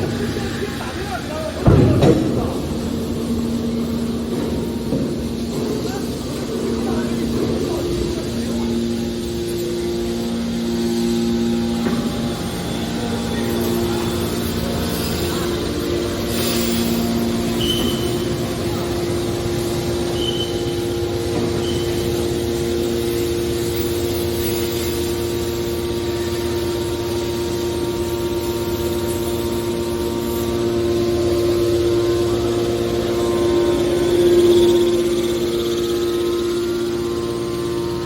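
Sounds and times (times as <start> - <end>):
scrap baler machine hum: 0.0 - 38.0
high squeaks: 16.2 - 22.4.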